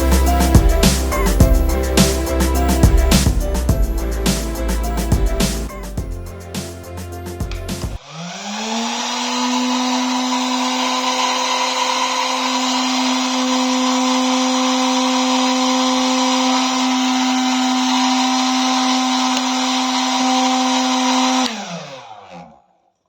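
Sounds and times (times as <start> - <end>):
small motor fan whining: 8.0 - 22.8.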